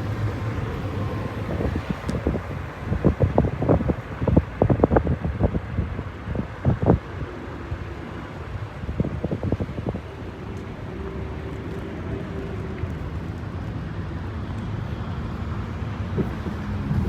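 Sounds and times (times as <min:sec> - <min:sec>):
engine hum shifting pitch: 0:00.0 - 0:03.2
traffic rumble: 0:00.0 - 0:17.0.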